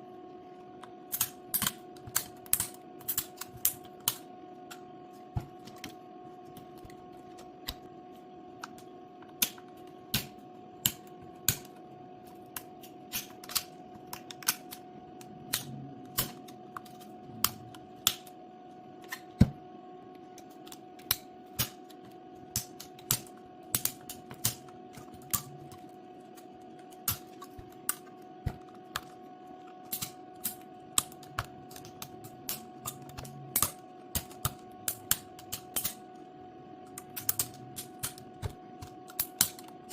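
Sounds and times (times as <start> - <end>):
electrical hum: 0.0 - 39.9.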